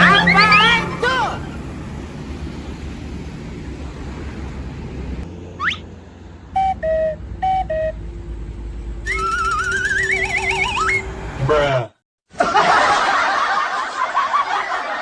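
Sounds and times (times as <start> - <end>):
falling two-note tones: 0.0 - 1.8, 6.5 - 11.5
warbling rising alarm tone: 0.0 - 3.5, 5.5 - 11.8
low rumble: 0.0 - 11.6
quick rising whistle: 5.6 - 5.8, 9.0 - 11.2.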